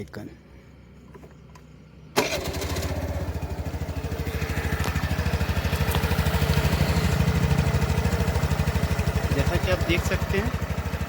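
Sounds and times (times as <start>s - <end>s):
scooter engine idling: 2.2s - 11.0s.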